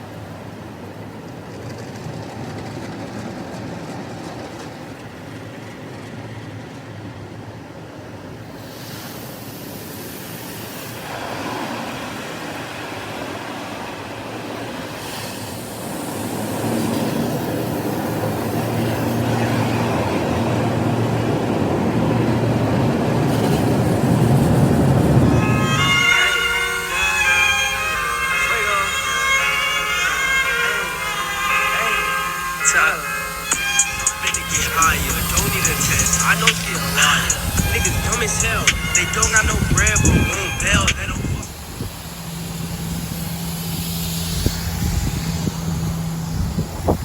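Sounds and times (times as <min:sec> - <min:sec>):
hiss: 0:08.5 - 0:12.0, 0:15.0 - 0:17.8
car wash water spray: 0:08.6 - 0:12.3.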